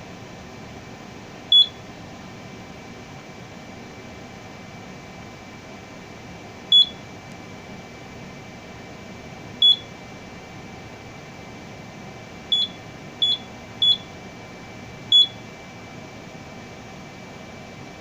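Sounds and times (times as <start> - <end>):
keypad beeping: 1.5 - 1.8, 6.7 - 7.0, 9.6 - 9.9, 12.5 - 14.1, 15.1 - 15.4.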